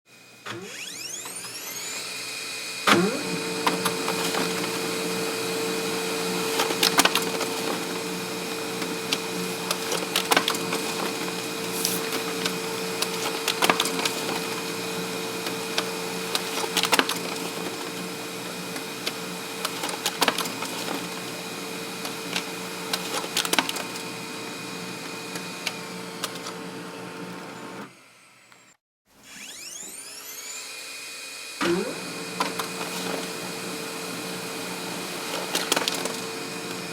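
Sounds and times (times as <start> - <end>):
printer motor hum: 0.4 - 28.0.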